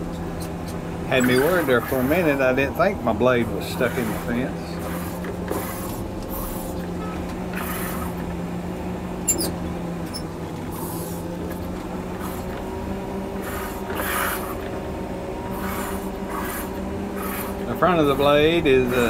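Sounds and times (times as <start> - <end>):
diesel engine running: 0.0 - 19.0
rough scraping noise: 1.1 - 2.5, 3.4 - 6.9, 13.4 - 14.7, 15.5 - 19.0.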